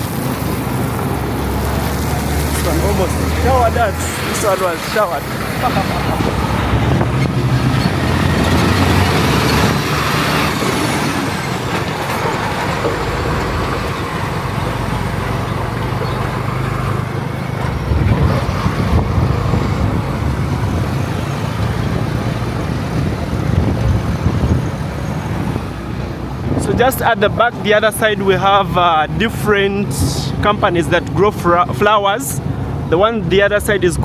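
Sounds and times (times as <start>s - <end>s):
road and wind noise: 0.0s - 34.0s
vehicle engine running: 0.0s - 34.0s.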